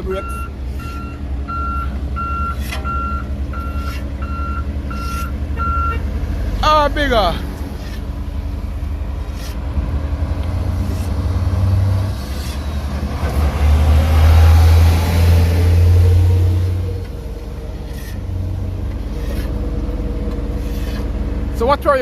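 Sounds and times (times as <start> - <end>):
steady low engine hum: 0.0 - 22.0
vehicle passing close: 0.5 - 22.0.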